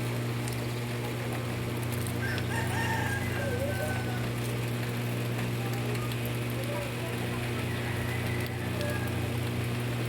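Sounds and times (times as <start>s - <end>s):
rooster crowing: 2.2s - 4.4s, 7.6s - 9.3s.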